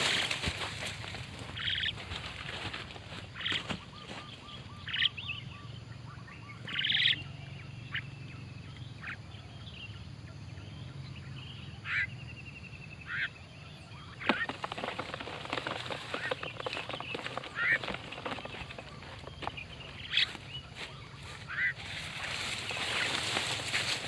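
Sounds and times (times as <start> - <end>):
starlings squawking: 1.4 - 8.1, 13.9 - 24.0
thin bird trilling: 14.0 - 24.0.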